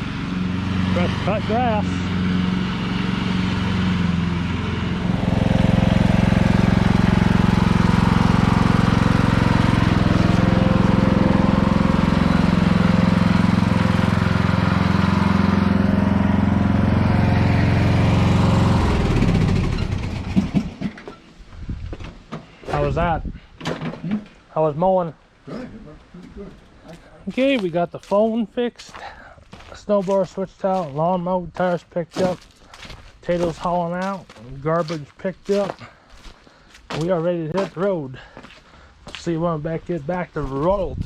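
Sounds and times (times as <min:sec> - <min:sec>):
lawn mower engine running: 0:00.0 - 0:21.3.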